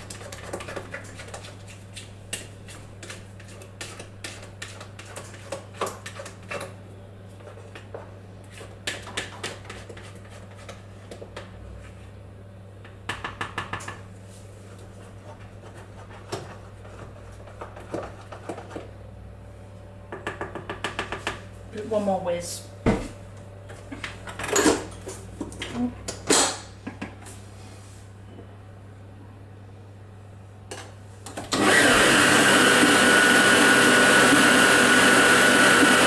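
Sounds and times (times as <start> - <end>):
spatula scraping a container: 0.0 - 6.7, 7.4 - 11.2.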